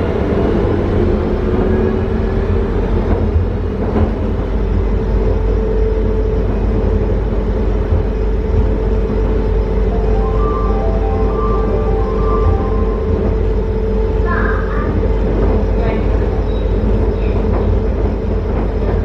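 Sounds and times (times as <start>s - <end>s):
metro train rumbling: 0.0s - 19.0s
train motor hum: 6.6s - 19.0s.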